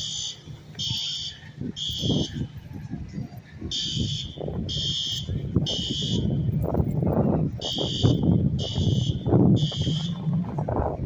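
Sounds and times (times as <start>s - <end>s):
fire alarm horn beeping: 0.0s - 2.5s, 3.7s - 6.6s, 7.6s - 10.3s.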